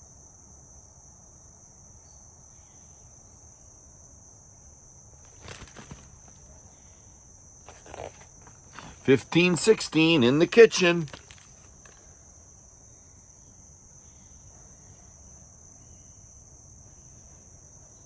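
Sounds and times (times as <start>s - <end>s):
brief rustles: 5.3s - 6.4s, 7.7s - 12.0s.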